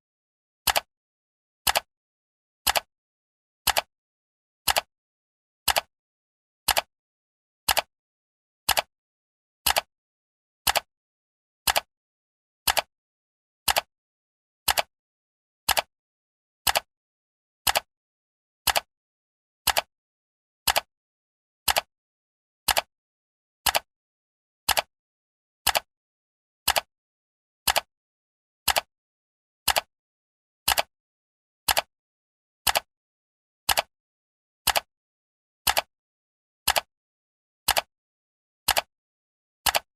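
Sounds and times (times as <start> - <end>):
timer ticking: 3.7 - 3.9, 4.7 - 4.9, 5.7 - 5.9, 6.7 - 6.9, 7.7 - 7.9, 9.7 - 9.9, 10.7 - 10.9, 11.7 - 11.9, 12.7 - 12.9, 13.7 - 13.9, 14.7 - 14.9, 19.7 - 19.9, 21.7 - 21.9, 22.7 - 22.9, 23.7 - 23.9, 27.7 - 27.9, 28.7 - 28.9, 31.7 - 31.9, 34.7 - 34.9, 35.7 - 35.9, 38.7 - 38.9, 39.7 - 39.9.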